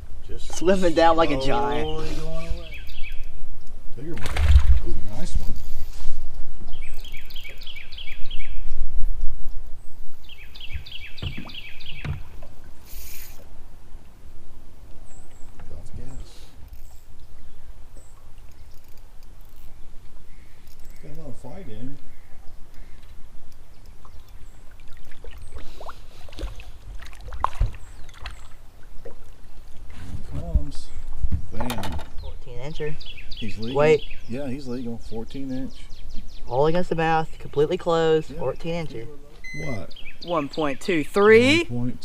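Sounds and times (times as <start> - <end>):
songbird singing: 0.0 - 4.2, 5.1 - 42.0
wind rumbling on microphone: 1.7 - 12.8, 26.4 - 32.4
water splashing and lapping: 4.1 - 6.2, 22.4 - 31.4
knocks: 11.2 - 12.4
short hiss: 12.8 - 13.4.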